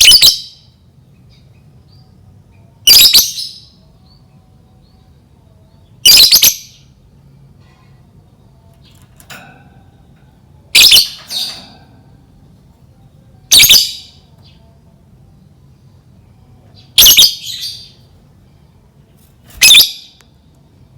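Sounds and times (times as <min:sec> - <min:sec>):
lovebird shrill chatter: 0:10.8 - 0:11.6, 0:17.0 - 0:17.9, 0:19.6 - 0:20.2.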